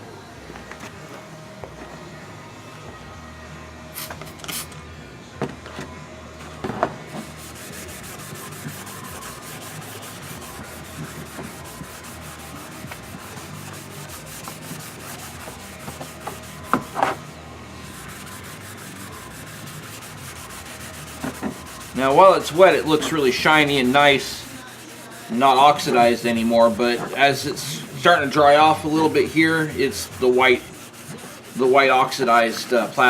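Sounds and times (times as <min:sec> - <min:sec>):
scrubbing on plastic: 0:07.2 - 0:17.2, 0:17.9 - 0:33.0.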